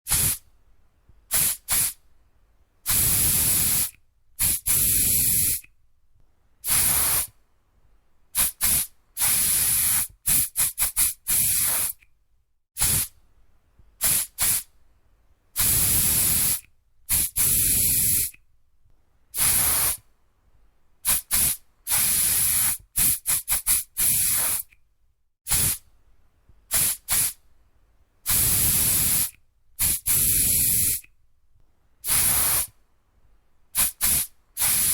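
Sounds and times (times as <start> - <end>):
aerosol spray can hissing: 0.1 - 0.4, 1.3 - 2.0, 2.9 - 5.6, 6.7 - 7.3, 8.4 - 12.0, 12.8 - 13.1, 14.0 - 14.7, 15.6 - 18.4, 19.4 - 20.0, 21.1 - 24.7, 25.5 - 25.8, 26.7 - 27.4, 28.3 - 31.0, 32.0 - 32.7, 33.8 - 34.9.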